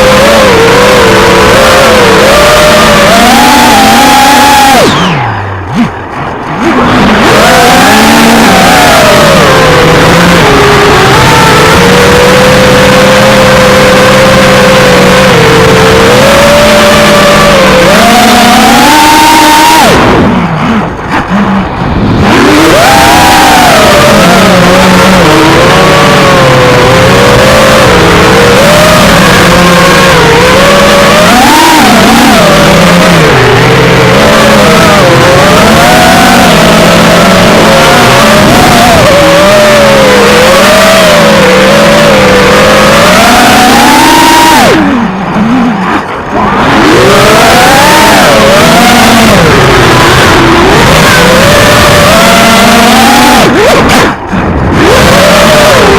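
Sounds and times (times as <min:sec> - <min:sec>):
drone motors whining: 0:00.0 - 0:55.9.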